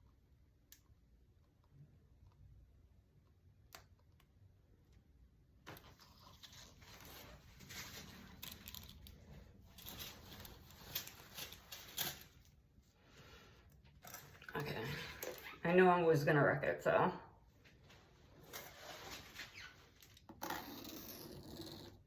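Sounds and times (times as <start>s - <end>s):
rustling and scraping handling: 5.7s - 13.0s, 17.6s - 20.3s.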